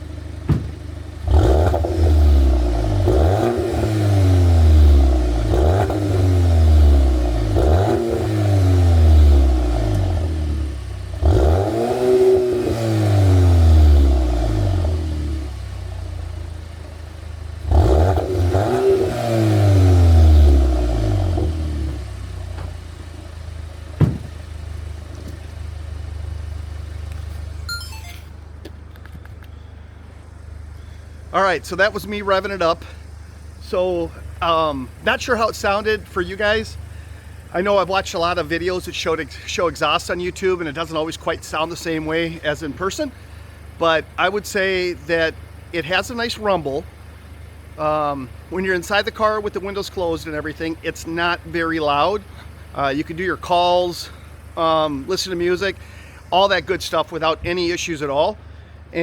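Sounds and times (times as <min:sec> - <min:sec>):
car engine revving: 0:00.0 - 0:27.6
car engine idling: 0:00.0 - 0:59.0.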